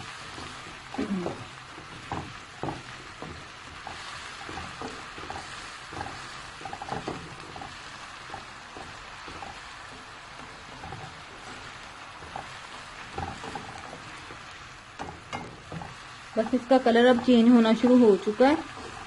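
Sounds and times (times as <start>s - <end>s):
vegetables sizzling in a pan: 0.0s - 19.0s
spoon scraping and tapping pan: 0.3s - 19.0s.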